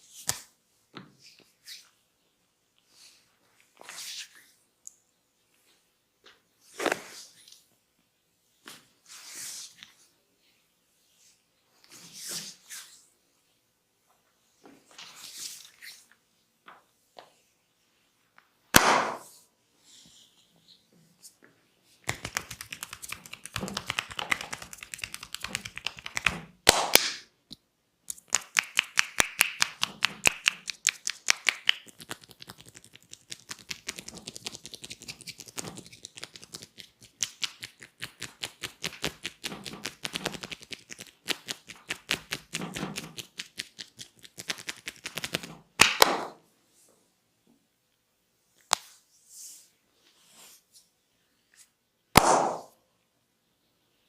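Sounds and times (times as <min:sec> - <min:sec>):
hands tapping body rapidly: 0:22.1 - 0:27.0, 0:28.1 - 0:46.4.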